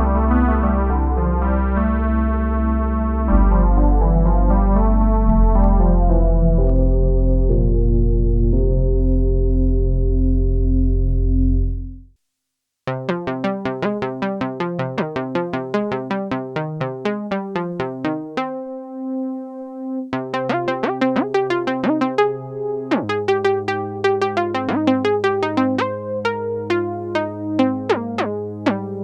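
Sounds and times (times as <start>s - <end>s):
synthesizer plucky notes: 0.0s - 11.9s, 12.9s - 29.0s
synthesizer held chord: 12.9s - 29.0s.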